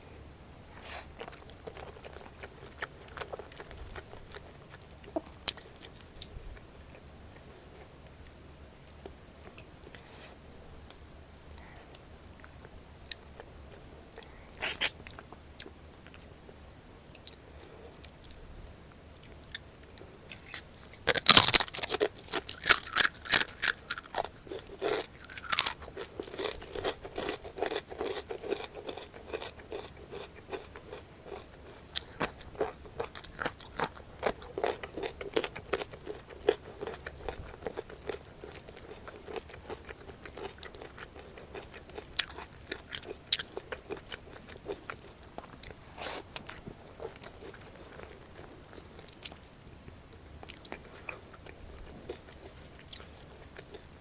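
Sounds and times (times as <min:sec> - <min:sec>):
soft chewing: 0:00.7 - 0:54.0
crunching crisp food: 0:00.8 - 0:07.9, 0:19.1 - 0:49.4.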